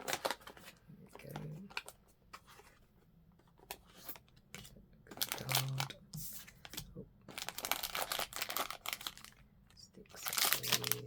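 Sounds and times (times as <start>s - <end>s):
packaging crinkling and tearing: 0.0s - 2.0s, 4.0s - 9.4s, 10.1s - 11.0s.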